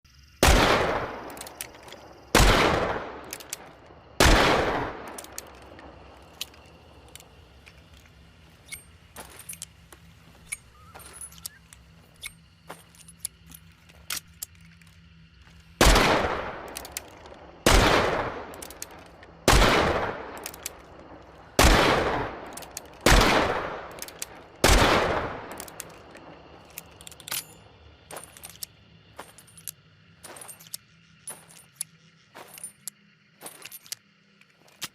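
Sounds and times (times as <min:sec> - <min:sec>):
gun clicks and handling noises: 0:01.2 - 0:02.1, 0:03.2 - 0:03.9, 0:05.0 - 0:17.5, 0:18.1 - 0:19.4, 0:20.0 - 0:21.4, 0:22.3 - 0:24.6, 0:25.4 - 0:34.9.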